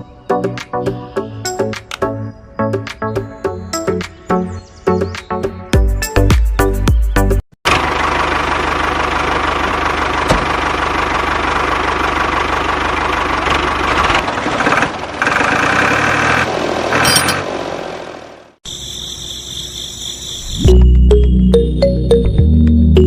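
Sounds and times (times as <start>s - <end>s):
engine running: 7.6s - 18.6s.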